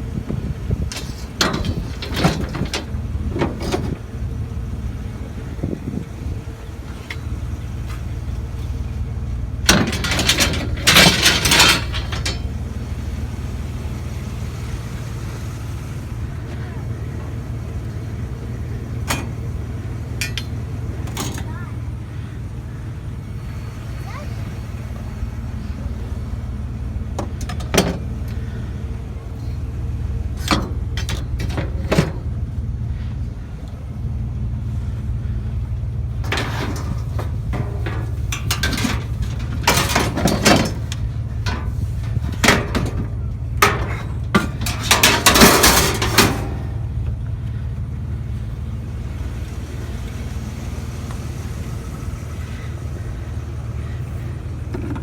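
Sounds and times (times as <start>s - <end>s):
scrap metal clanking and rattling: 0.0s - 22.3s, 26.6s - 33.1s, 35.8s - 50.4s, 51.2s - 55.0s
vehicle engine idling: 0.0s - 55.0s.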